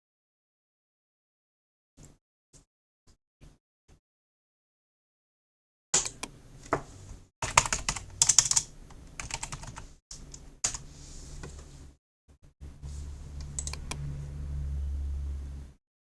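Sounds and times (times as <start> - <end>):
computer keyboard typing: 6.0 - 6.8, 7.4 - 11.7, 13.3 - 14.0.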